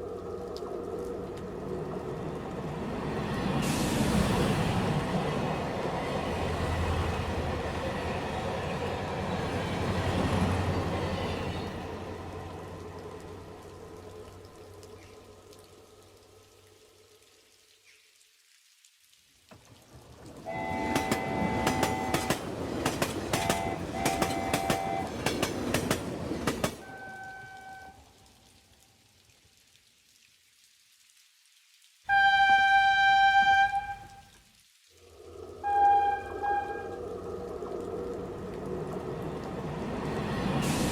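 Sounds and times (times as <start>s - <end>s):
train rumbling on rails: 0.0s - 14.5s, 19.9s - 27.8s, 35.1s - 40.9s
train wheels clacking: 20.6s - 26.8s
train squealing tone: 26.8s - 28.0s, 35.6s - 37.1s.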